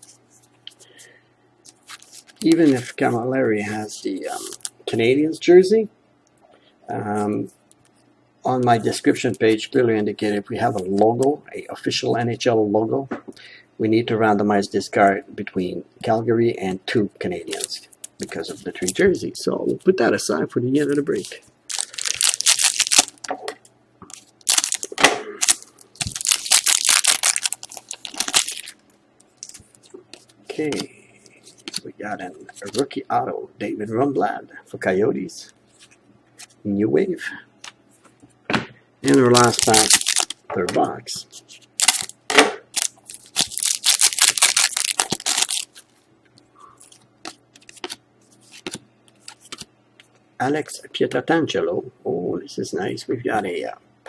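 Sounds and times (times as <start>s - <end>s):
cards rustling and clicking: 17.5s - 19.0s, 20.8s - 23.3s, 24.0s - 30.9s, 31.5s - 31.8s, 39.0s - 40.4s, 41.8s - 45.9s, 46.8s - 49.7s
wrapper crinkling and tearing: 20.8s - 23.3s, 24.1s - 30.3s, 39.0s - 40.4s, 41.8s - 45.9s.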